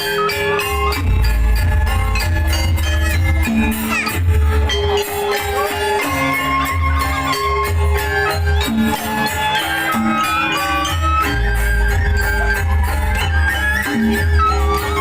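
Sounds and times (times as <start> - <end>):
sharp percussion strikes: 0.0 - 15.0
traditional ensemble music: 0.0 - 15.0
booming bass beats: 0.9 - 5.1.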